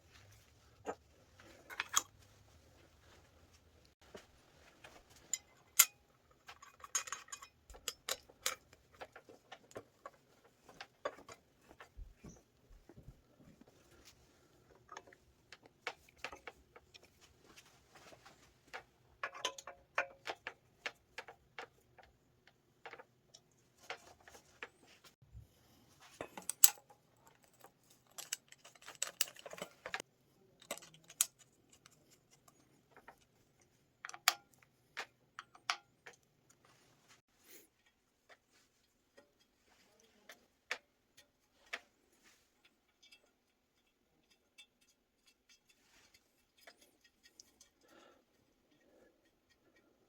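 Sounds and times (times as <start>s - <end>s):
metal parts and tools clinking: 1.6s - 2.2s, 4.8s - 11.9s, 18.2s - 22.1s, 26.1s - 33.3s.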